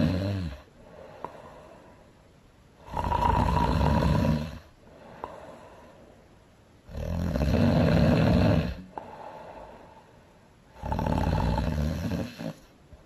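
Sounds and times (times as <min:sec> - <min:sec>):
woman snoring loudly: 0:00.0 - 0:00.7, 0:02.8 - 0:04.7, 0:06.9 - 0:09.0, 0:10.8 - 0:12.7
quiet breathing: 0:00.0 - 0:13.0.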